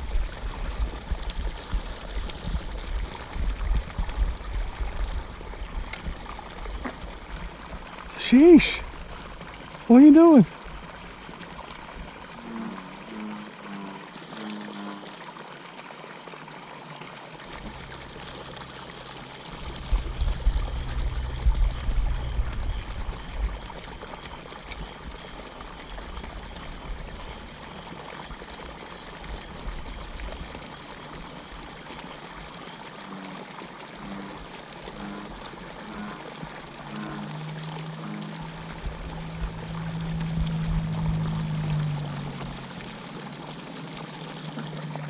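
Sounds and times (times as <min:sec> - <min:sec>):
low rumble on microphone: 0:00.0 - 0:09.9, 0:17.4 - 0:30.8, 0:34.0 - 0:45.0
water pouring into pond: 0:00.0 - 0:45.0.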